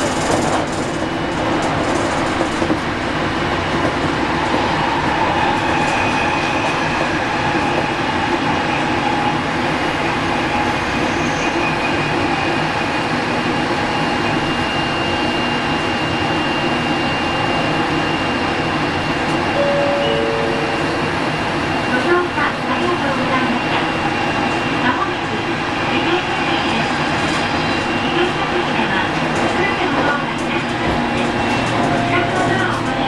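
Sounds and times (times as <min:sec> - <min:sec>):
train wheels rumbling on rail: 0:00.0 - 0:33.0
thin high steady tone: 0:19.6 - 0:21.2.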